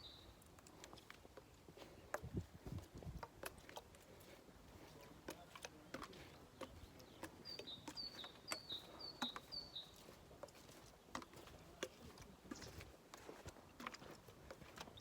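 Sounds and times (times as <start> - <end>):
bird chirping: 0.0 - 0.4, 5.9 - 11.6
faint clicks and knocks: 0.6 - 9.6, 10.3 - 15.0.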